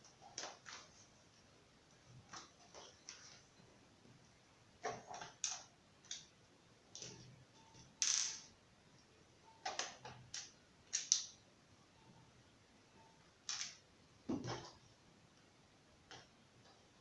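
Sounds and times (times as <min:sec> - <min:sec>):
small parts clicking and scraping: 0:13.4 - 0:13.8.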